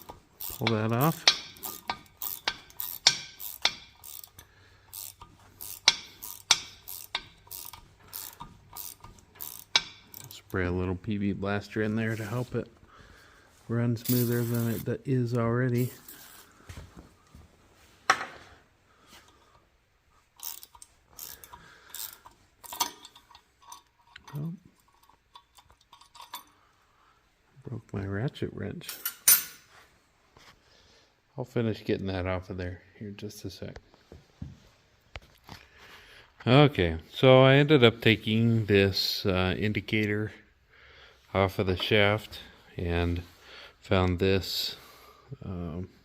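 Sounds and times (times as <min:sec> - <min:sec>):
ratchet wrench clicking: 0:00.0 - 0:10.6, 0:20.4 - 0:26.5.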